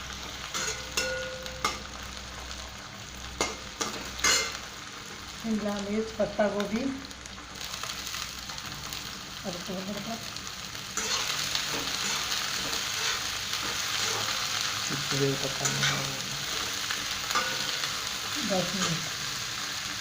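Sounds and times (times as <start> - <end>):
vegetables sizzling in oil: 0.0 - 20.0.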